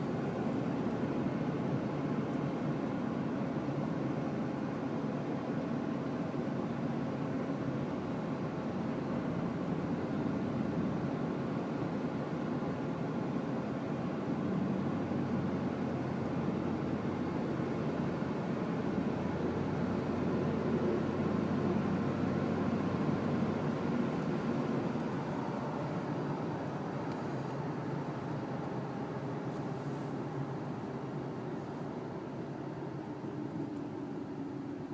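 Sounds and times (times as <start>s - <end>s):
pickup truck engine rumble: 14.1s - 34.8s.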